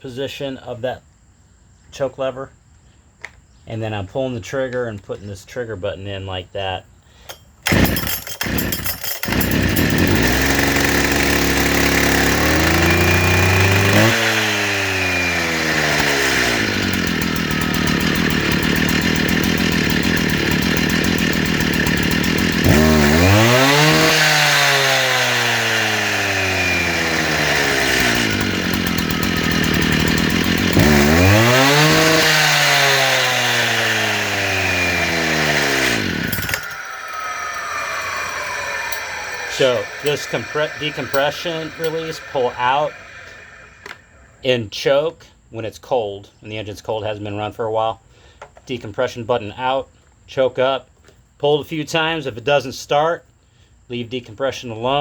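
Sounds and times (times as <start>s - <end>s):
concrete saw engine revving: 7.6s - 44.4s.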